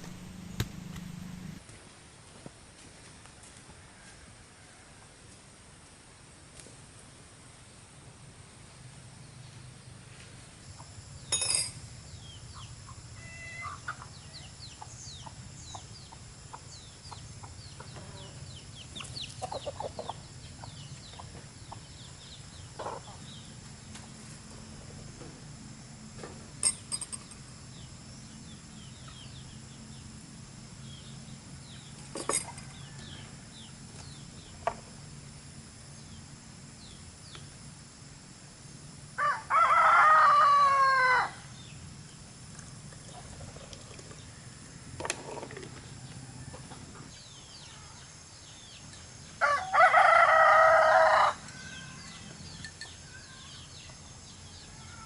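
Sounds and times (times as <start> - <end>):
rooster crowing: 3.8 - 5.1, 13.2 - 14.4, 32.5 - 33.6, 39.2 - 41.4, 49.4 - 52.2.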